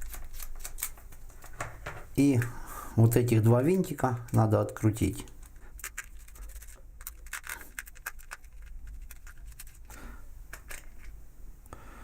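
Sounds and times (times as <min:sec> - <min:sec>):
parts being handled: 0:05.2 - 0:11.2.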